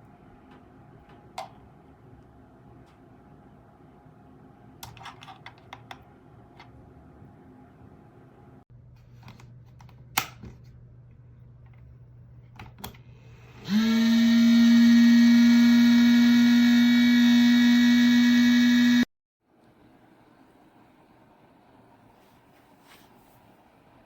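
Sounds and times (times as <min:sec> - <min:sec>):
loud steady electric hum: 0:13.6 - 0:19.1.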